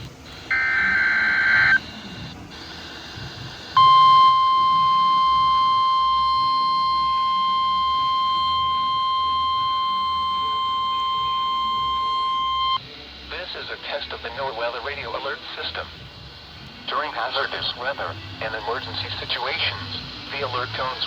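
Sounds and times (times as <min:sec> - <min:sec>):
raspy two-tone data header: 0:00.0 - 0:12.8
faint radio hiss: 0:00.0 - 0:21.0
steady warning alarm tone: 0:00.3 - 0:12.8.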